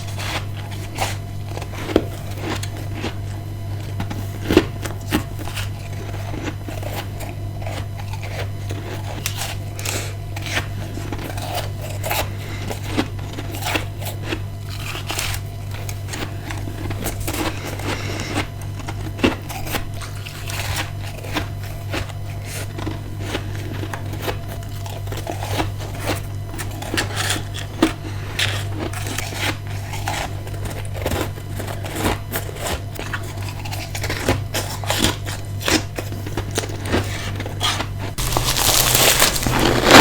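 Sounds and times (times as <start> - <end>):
chewing ice crunches: 38.2 - 40.0.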